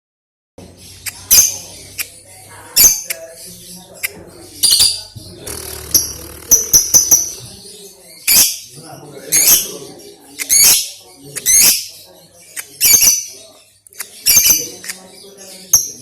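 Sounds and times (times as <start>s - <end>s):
lovebird chirps and screeches: 2.8s - 8.7s, 10.4s - 15.2s.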